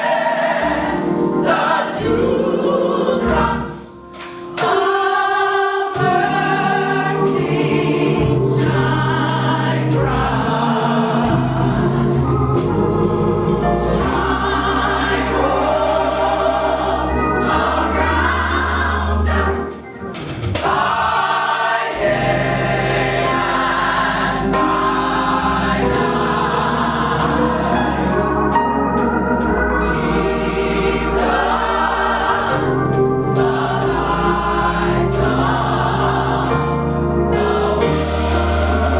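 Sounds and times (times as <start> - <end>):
gospel choir singing: 0.0 - 38.9
instrumental accompaniment: 0.0 - 38.9
low bass notes: 7.2 - 19.8, 21.9 - 38.9.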